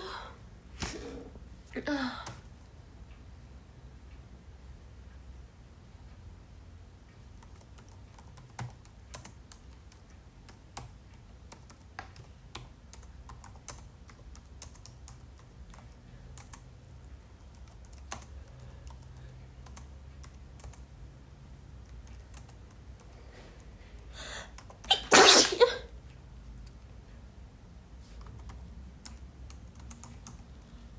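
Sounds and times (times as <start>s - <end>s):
person sneezing: 0.8s - 1.3s, 24.9s - 25.9s
computer keyboard typing: 7.3s - 16.7s, 17.4s - 20.9s, 21.8s - 23.1s, 28.2s - 30.5s
person breathing in: 23.3s - 24.6s.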